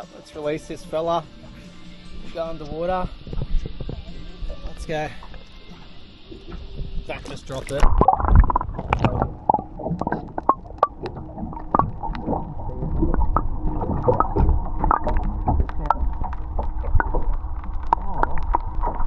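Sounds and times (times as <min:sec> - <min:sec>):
low rumble: 0:01.5 - 0:19.0
water splashing against boat hull: 0:03.2 - 0:19.0
water dripping: 0:04.7 - 0:19.0.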